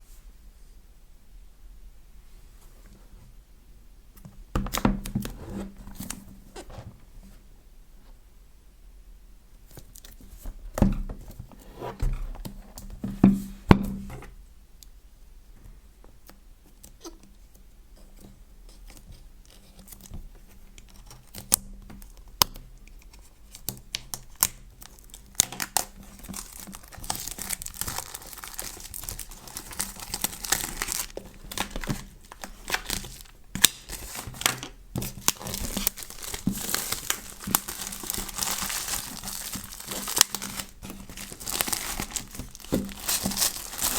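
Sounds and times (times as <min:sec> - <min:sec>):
wrapping crinkling and tearing: 0:23.4 - 0:43.9.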